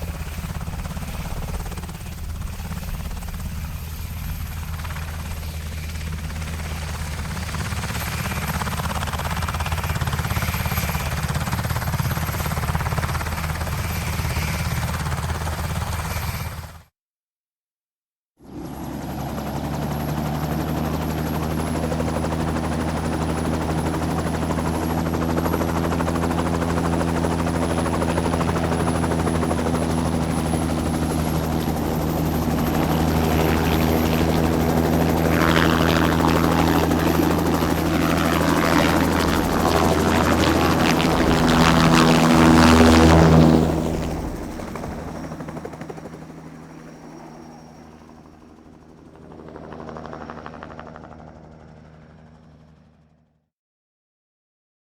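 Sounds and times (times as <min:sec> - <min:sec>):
helicopter engine drone: 0:00.0 - 0:16.9, 0:18.4 - 0:53.3
high turbine whine: 0:21.6 - 0:46.1.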